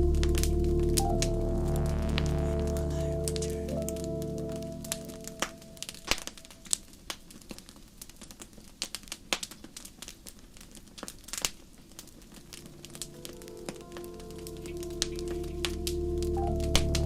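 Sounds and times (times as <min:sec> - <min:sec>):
sustained music tones: 0:00.0 - 0:06.7, 0:12.4 - 0:17.0
wood fire crackling: 0:00.0 - 0:17.0.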